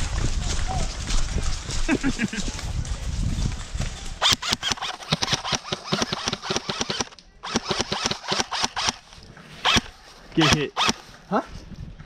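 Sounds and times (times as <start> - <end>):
airsoft guns firing: 4.2 - 9.0.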